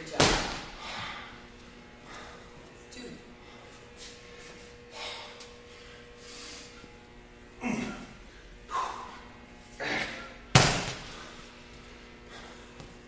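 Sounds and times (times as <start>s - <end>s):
medicine ball thudding on floor: 0.0s - 0.8s, 10.5s - 11.2s
man breathing forcefully: 0.6s - 2.7s, 4.8s - 6.9s, 12.2s - 13.0s.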